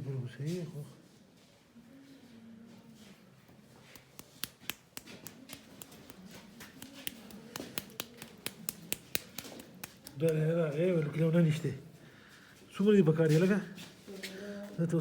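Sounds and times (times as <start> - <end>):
faint murmur of voices: 0.0 - 4.2
hands handling small hard objects: 4.0 - 10.4.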